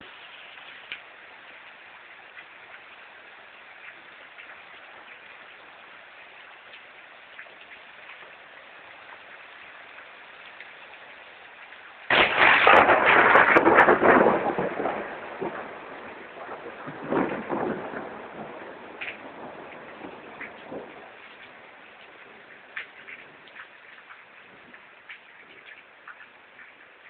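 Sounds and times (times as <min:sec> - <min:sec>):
rain pattering: 0:00.0 - 0:27.0
loud crashing burst: 0:12.1 - 0:14.9.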